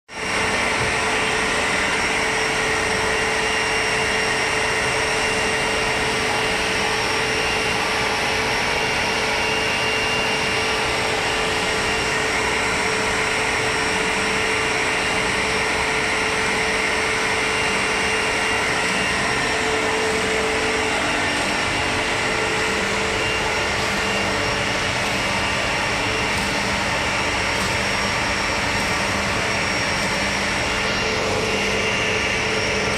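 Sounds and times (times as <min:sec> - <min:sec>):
cutting machine hissing: 0:18.9 - 0:32.9.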